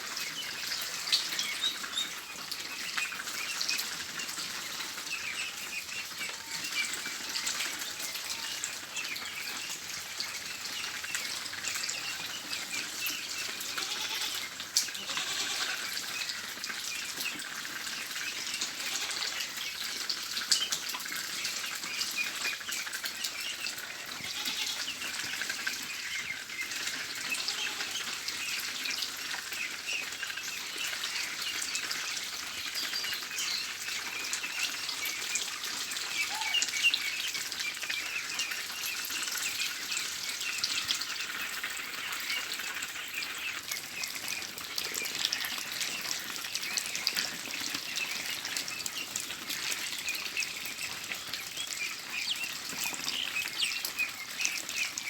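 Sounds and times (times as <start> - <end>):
flock of ducks calling: 0.0 - 55.0.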